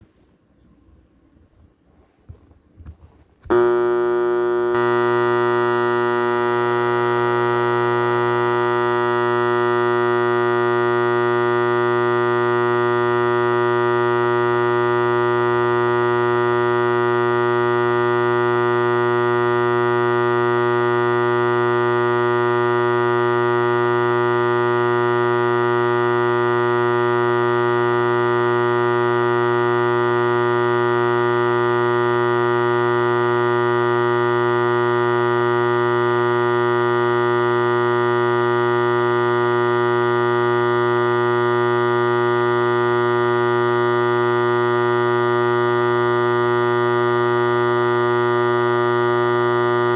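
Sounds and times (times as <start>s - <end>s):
fire alarm horn blaring: 3.5s - 16.8s.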